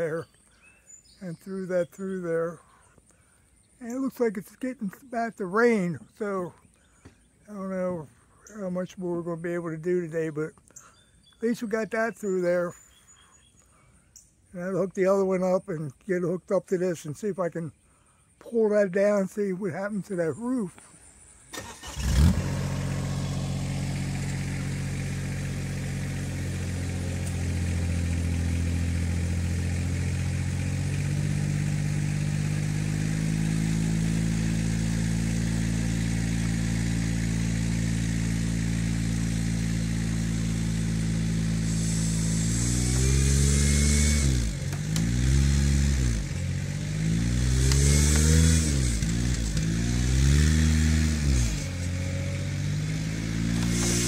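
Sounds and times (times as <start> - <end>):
vehicle engine revving: 21.5 - 54.0.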